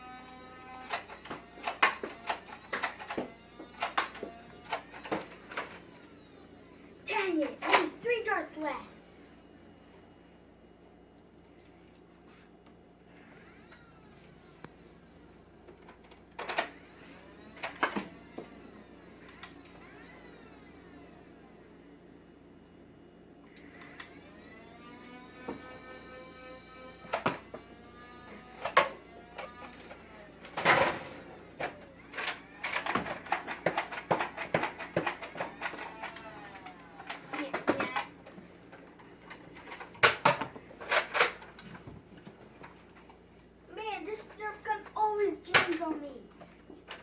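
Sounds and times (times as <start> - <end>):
toy blaster plastic clacks: 0.8 - 6.1, 28.6 - 38.4, 44.8 - 46.0.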